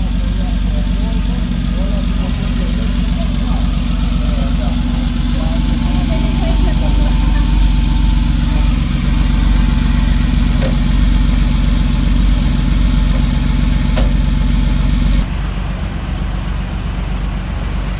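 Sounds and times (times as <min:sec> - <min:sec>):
car engine idling: 0:00.0 - 0:17.9.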